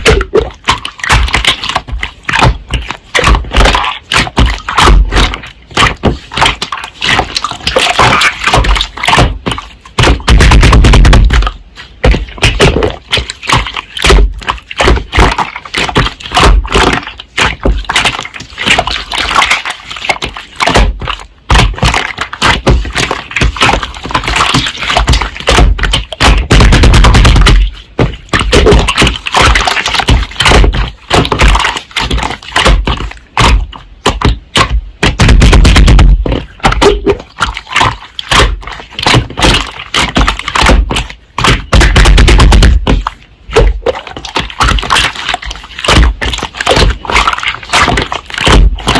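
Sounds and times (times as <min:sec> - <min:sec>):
slime squishing and crackling: 0:00.0 - 0:48.9
heavy low thumping: 0:25.6 - 0:28.9, 0:33.5 - 0:37.2, 0:41.6 - 0:43.8.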